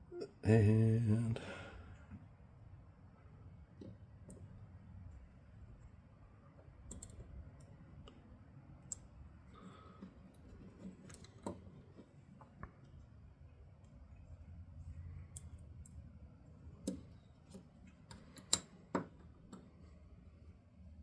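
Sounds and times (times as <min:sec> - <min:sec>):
small metal parts clicking: 0:06.9 - 0:07.2, 0:16.8 - 0:18.8.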